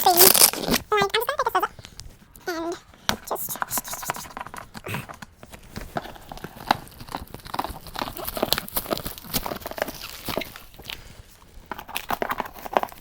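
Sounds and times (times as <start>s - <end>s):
plastic and cardboard crinkling: 0.0s - 13.0s.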